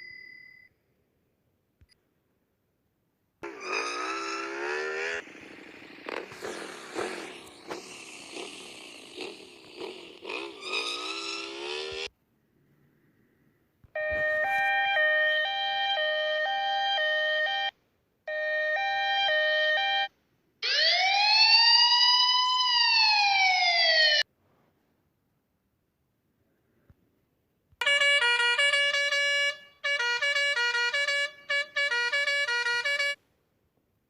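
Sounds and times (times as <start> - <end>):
emergency vehicle siren: 3.4 - 12.1, 14.0 - 17.7, 18.3 - 24.3, 27.8 - 33.2
vehicle engine revving: 3.4 - 12.1.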